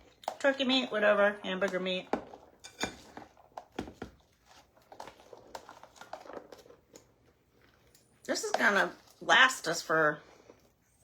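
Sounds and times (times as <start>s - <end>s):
spoon scraping casserole dish: 0.2s - 9.3s.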